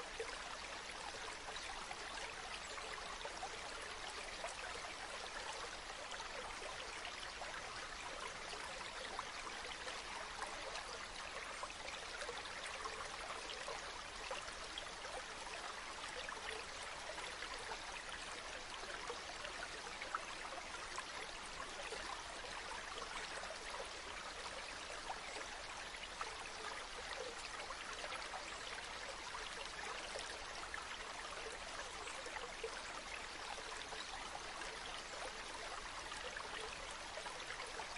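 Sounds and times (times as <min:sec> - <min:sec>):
stream flowing and trickling: 0:00.0 - 0:37.9.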